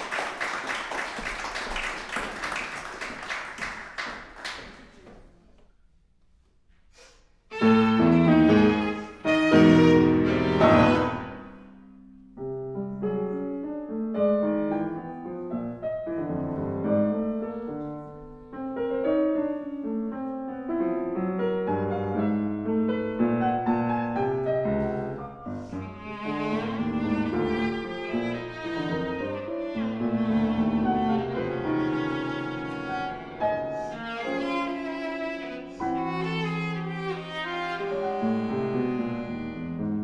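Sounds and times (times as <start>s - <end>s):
bowed viola line: 7.5s - 11.6s, 25.7s - 40.0s
piano chords: 7.5s - 40.0s.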